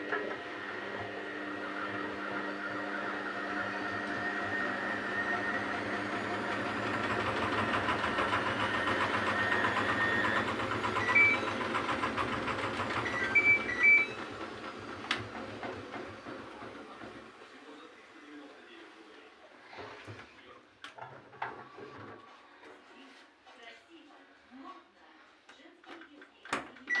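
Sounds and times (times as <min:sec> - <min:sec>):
washing machine motor hum: 0:00.0 - 0:17.8.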